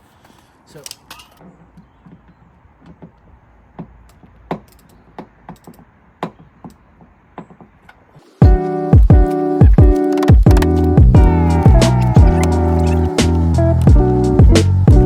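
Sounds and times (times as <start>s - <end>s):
loud music with strong beat: 8.4s - 15.0s.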